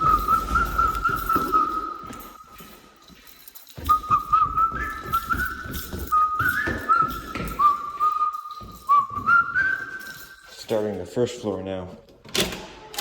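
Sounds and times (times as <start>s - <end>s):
person whistling a tune: 0.0s - 2.8s, 3.7s - 10.6s.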